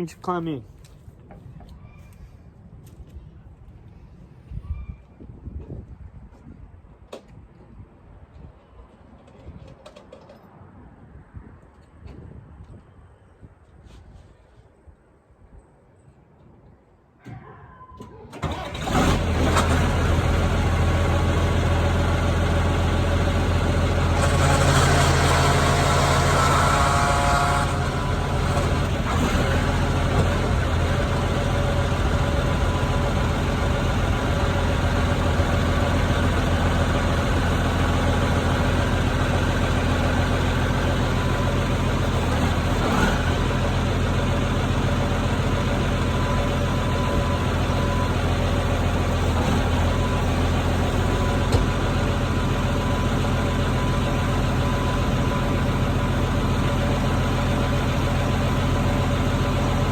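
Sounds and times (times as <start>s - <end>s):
diesel tractor engine running: 18.3s - 59.9s.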